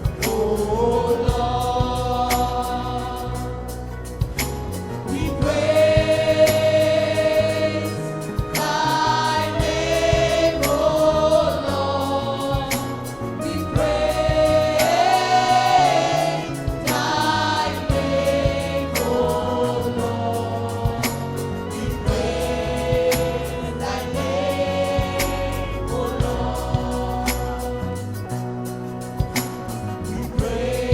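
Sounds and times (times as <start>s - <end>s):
gospel choir singing: 0.0s - 30.9s
moving bass line: 0.0s - 30.9s
steady beat: 0.1s - 20.1s.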